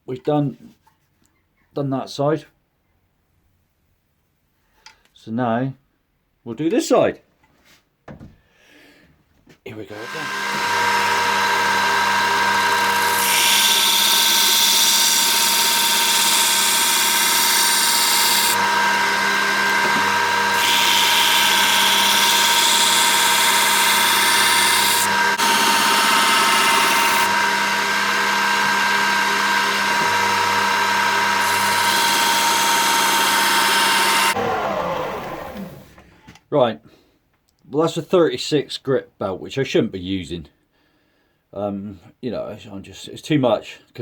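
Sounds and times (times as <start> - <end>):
blade grinding on belt: 9.9 - 35.8
belt grinder motor whine: 10.0 - 36.0
motor spinning down: 10.0 - 36.0.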